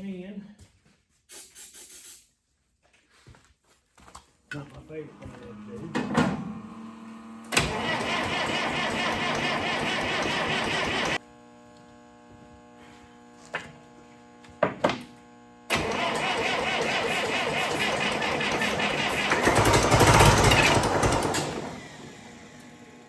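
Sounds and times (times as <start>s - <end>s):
diesel engine cranking on starter: 7.5s - 11.2s, 15.7s - 23.0s.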